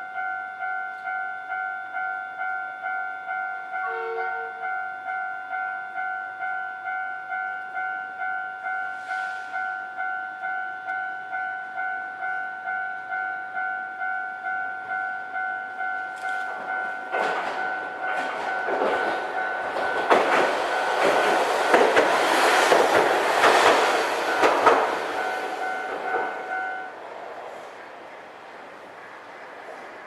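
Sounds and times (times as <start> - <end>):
streetcar rumbling: 3.8 - 4.8, 8.6 - 30.0
level crossing signal clanging: 9.6 - 27.0.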